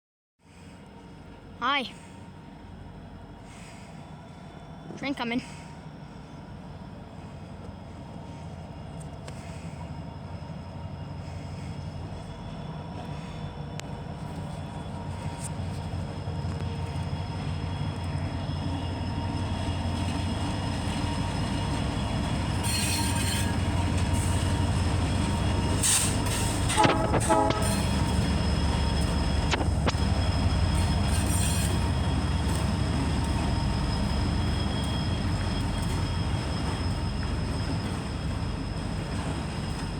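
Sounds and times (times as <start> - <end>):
diesel locomotive rumble: 0.5 - 39.9
wheels squealing on rail: 7.4 - 39.9
train horn blare: 26.7 - 28.1.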